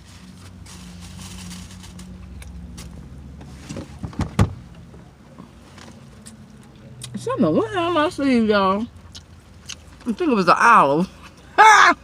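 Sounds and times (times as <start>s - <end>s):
chewing and mouth smacking: 9.0s - 10.1s.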